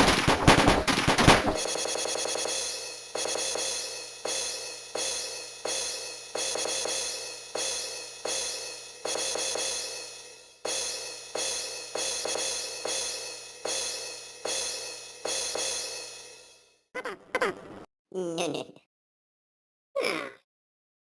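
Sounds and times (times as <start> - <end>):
ringing metallic strikes: 1.5 - 16.8.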